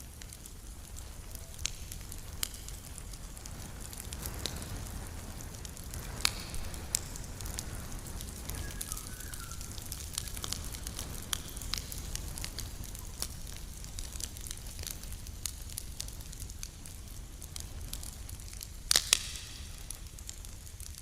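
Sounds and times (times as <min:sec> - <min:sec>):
campfire popping and crackling: 0:00.0 - 0:21.0.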